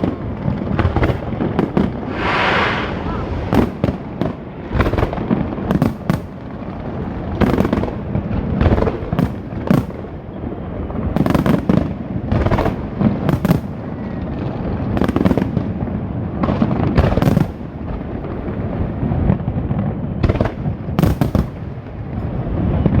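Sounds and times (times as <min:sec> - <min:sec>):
rumble of explosions: 0:01.8 - 0:05.3.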